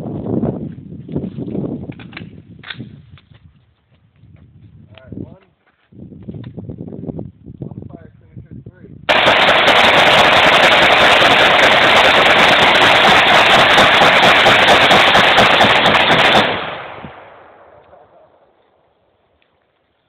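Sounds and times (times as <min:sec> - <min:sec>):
automatic gunfire: 0:09.1 - 0:17.3
gunfire echo: 0:09.1 - 0:18.6.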